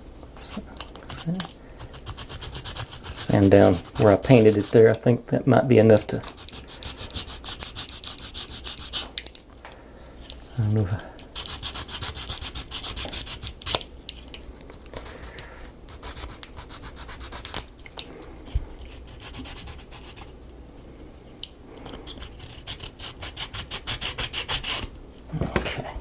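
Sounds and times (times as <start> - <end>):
hand sanding wood: 0.0 - 5.0, 6.0 - 9.2, 11.4 - 13.8, 15.9 - 17.6, 18.9 - 20.3, 22.1 - 24.9.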